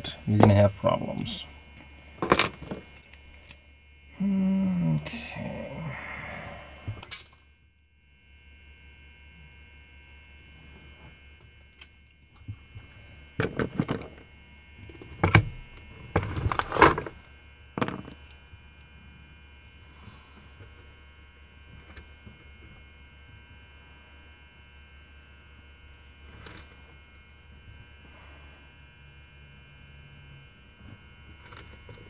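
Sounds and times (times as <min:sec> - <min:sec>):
metal parts clicking and clinking: 0:01.8 - 0:03.7, 0:07.0 - 0:07.4, 0:11.4 - 0:12.4, 0:13.4 - 0:14.2, 0:17.8 - 0:18.4.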